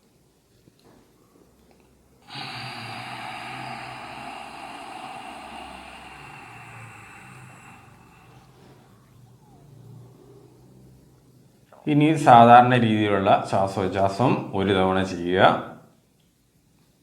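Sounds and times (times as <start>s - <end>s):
slow hissing breath: 2.2s - 11.2s.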